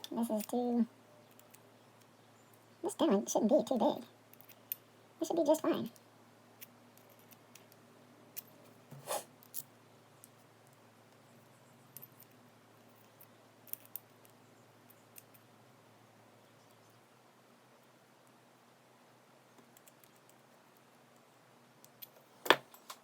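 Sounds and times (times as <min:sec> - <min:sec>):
faint steady hum: 0:00.0 - 0:23.0
metallic clicks of lock parts: 0:04.3 - 0:04.8, 0:13.0 - 0:15.5
small tools scraping: 0:08.6 - 0:09.3.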